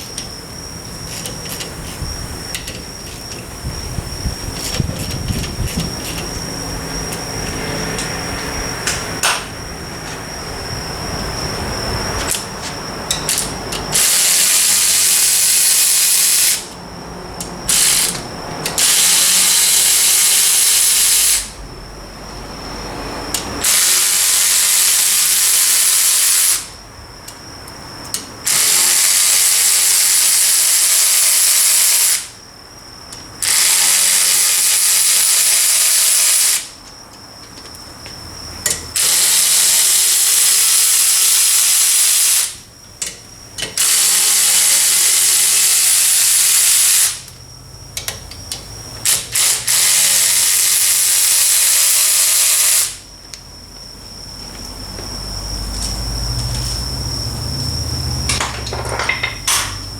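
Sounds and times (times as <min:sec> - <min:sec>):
pneumatic wrench running: 0:00.0 - 0:10.2, 0:12.2 - 0:16.8, 0:17.4 - 0:21.6, 0:23.3 - 0:26.8, 0:28.4 - 0:32.4, 0:33.4 - 0:36.8, 0:38.6 - 0:47.4, 0:49.0 - 0:53.0.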